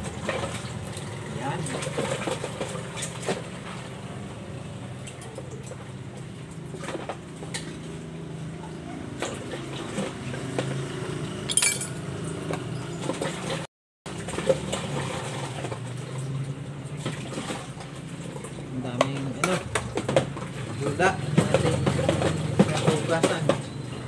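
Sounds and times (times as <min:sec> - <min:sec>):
dishes clattering: 0:11.5 - 0:12.0
dishes clinking in water: 0:11.5 - 0:12.1.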